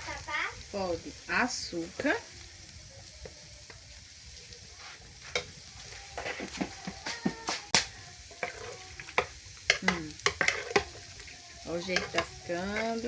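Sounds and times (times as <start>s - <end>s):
cooking pot hissing: 0.0s - 13.0s
spoon scraping and knocking pot: 7.7s - 13.0s.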